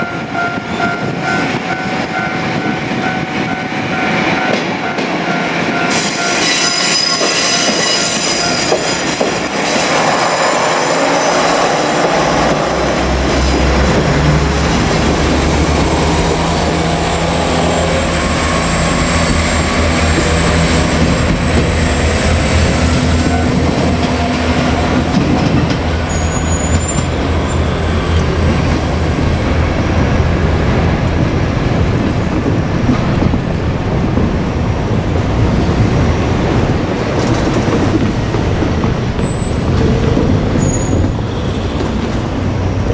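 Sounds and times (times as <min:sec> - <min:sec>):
rail noise: 0:00.0 - 0:42.9
wheel squeal: 0:06.4 - 0:13.6, 0:26.0 - 0:28.2, 0:40.6 - 0:42.0
diesel engine drone: 0:09.5 - 0:26.1.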